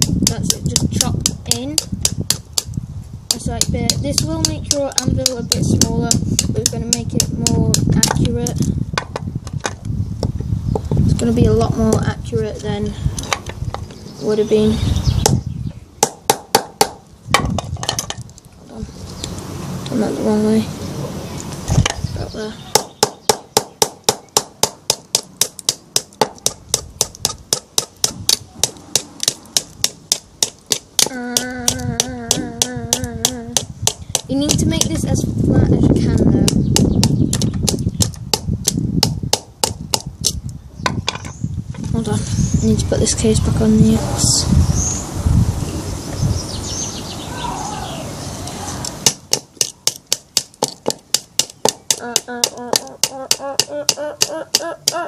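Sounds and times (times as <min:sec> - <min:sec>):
low rumbling wind: 0:00.0 - 0:55.0
hammer tapping knife spine: 0:49.0 - 0:55.0.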